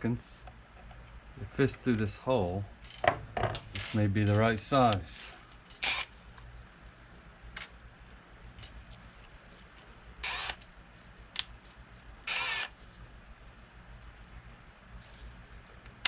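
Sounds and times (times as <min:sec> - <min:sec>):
power drill bursts: 0:05.8 - 0:06.1, 0:10.2 - 0:10.6, 0:12.3 - 0:12.7.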